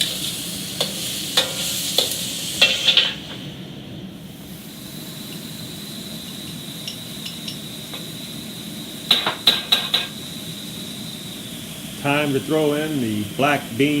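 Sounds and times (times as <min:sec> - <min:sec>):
faint high whine: 0:00.0 - 0:14.0
scallops sizzling in a wok: 0:00.0 - 0:14.0.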